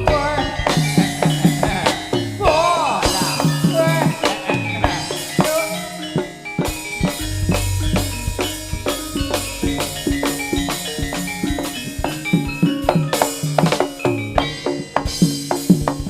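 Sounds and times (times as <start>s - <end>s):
drums striking: 0.0s - 16.0s
ringing metal percussion: 0.0s - 16.0s
deep low note: 7.2s - 11.5s.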